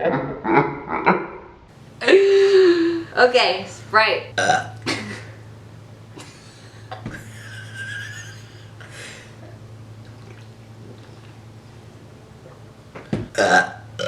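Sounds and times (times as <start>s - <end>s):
low electrical hum: 0.0s - 14.0s
person drinking and swallowing: 8.8s - 11.5s.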